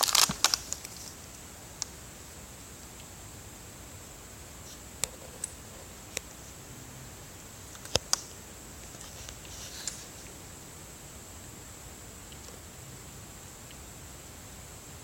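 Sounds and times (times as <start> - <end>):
steady hiss: 0.0 - 15.0
sharp clicks: 7.7 - 8.3
soft rustle of handling: 8.8 - 10.4.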